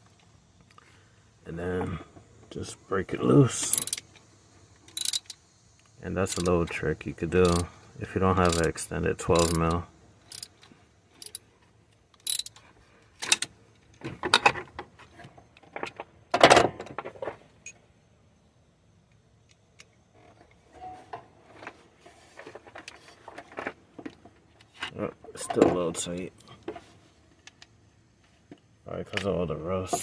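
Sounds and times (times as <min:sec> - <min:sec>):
ratchet clicking on metal: 0:03.5 - 0:04.2, 0:04.9 - 0:06.8, 0:07.4 - 0:07.7, 0:08.3 - 0:11.5, 0:12.1 - 0:12.6, 0:13.2 - 0:13.5
soft scraping and handling: 0:20.3 - 0:27.6.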